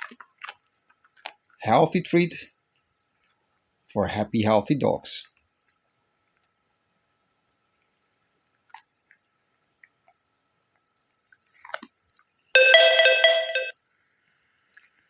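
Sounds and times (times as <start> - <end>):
dog chewing: 0.0 - 1.6, 11.1 - 12.3
electronic chime: 12.6 - 13.7.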